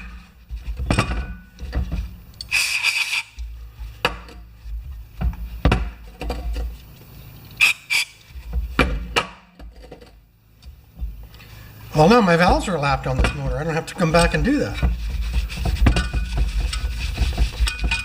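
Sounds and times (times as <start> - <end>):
small parts and tools knocking: 0.0 - 4.4, 5.1 - 11.4, 12.2 - 18.0
rag rubbing: 1.6 - 5.6, 7.6 - 8.8, 12.0 - 18.0
short hiss: 2.4 - 3.4, 7.6 - 8.3.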